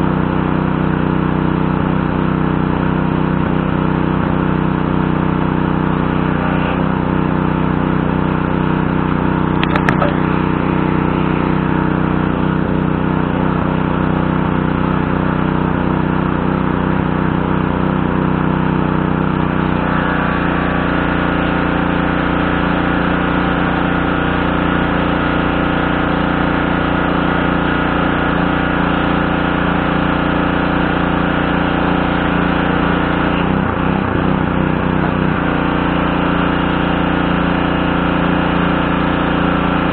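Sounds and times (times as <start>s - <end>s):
pressure washer engine running: 0.0s - 39.9s
sharp click: 9.6s - 10.2s.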